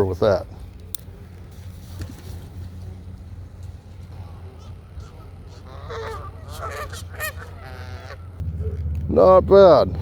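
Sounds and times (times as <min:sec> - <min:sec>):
steady low rumble: 0:00.4 - 0:10.0
geese honking: 0:04.2 - 0:08.8.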